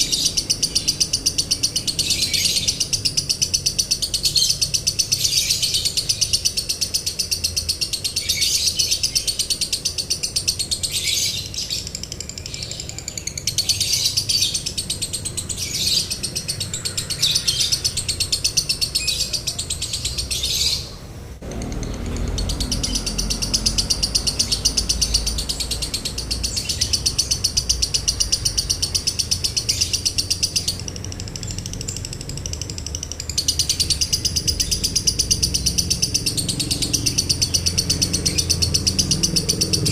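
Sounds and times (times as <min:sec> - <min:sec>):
lovebird chattering: 0:00.0 - 0:39.9.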